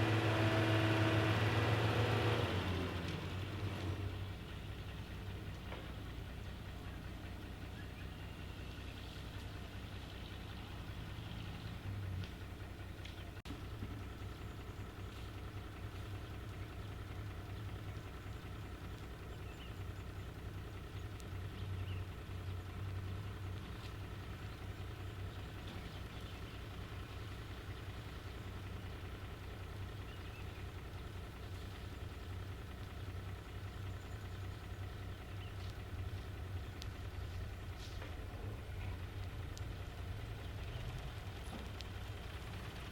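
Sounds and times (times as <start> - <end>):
diesel engine low hum: 0.0 - 42.9
faint clicks: 14.4 - 21.4, 29.8 - 40.0, 40.6 - 42.2.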